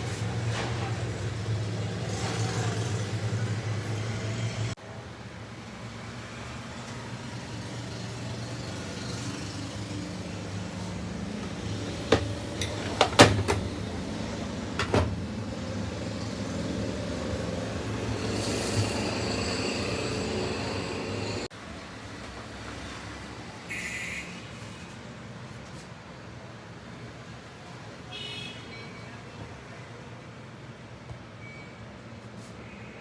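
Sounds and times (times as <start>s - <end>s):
washing machine humming: 10.5s - 21.5s
sharp knocks: 11.4s - 13.8s.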